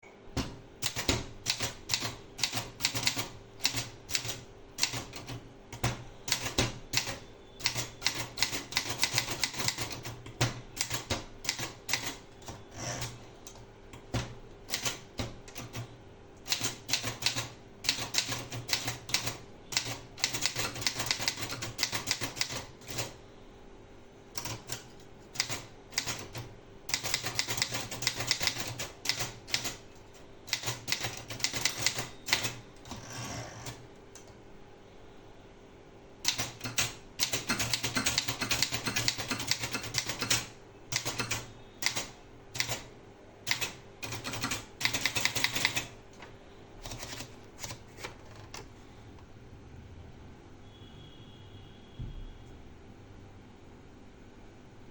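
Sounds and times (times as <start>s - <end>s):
faint steady hum: 0.0s - 54.9s
typewriter key strikes: 30.5s - 32.6s, 36.3s - 42.9s.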